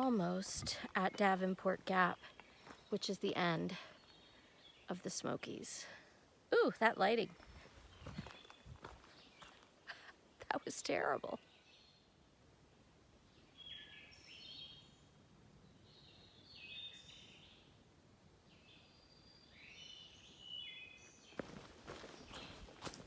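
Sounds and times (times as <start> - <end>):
footsteps on trail: 0.0 - 3.0, 7.4 - 9.8, 21.3 - 23.0
songbird chirping: 0.0 - 23.0.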